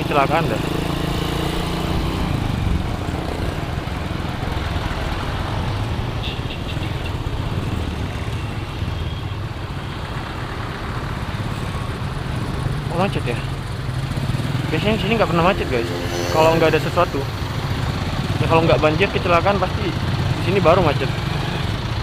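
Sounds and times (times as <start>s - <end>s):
motorcycle engine running at low revs: 0.0s - 6.2s.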